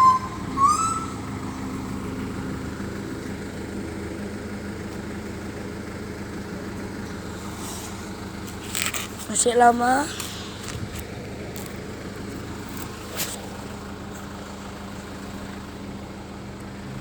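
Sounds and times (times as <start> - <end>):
short rising chirps: 0.0 - 3.3
bus diesel engine idling: 0.0 - 17.0.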